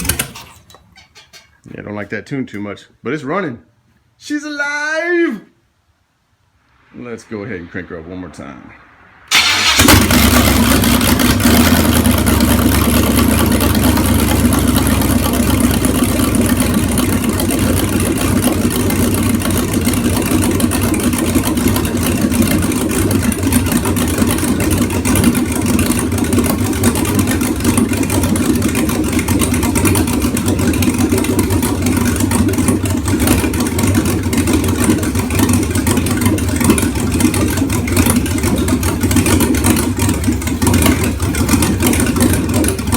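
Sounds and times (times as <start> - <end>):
engine running loudly: 7.0 - 42.9.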